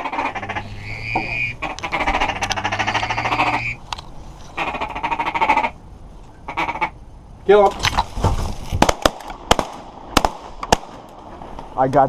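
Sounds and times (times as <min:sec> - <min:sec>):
goose calling raspily: 0:00.0 - 0:03.8, 0:04.5 - 0:05.8, 0:06.4 - 0:07.0.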